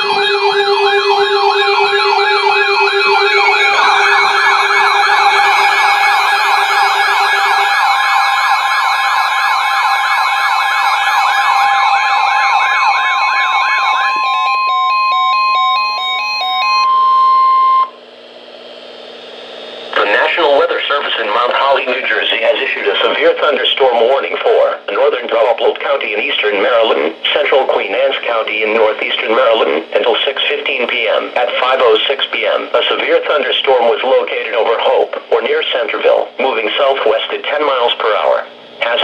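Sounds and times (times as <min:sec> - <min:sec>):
alternating two-pitch beeps: 0:00.0 - 0:18.0
electronic siren wails: 0:00.0 - 0:18.0, 0:19.9 - 0:34.8
steady high tone: 0:00.0 - 0:18.0, 0:19.9 - 0:35.5.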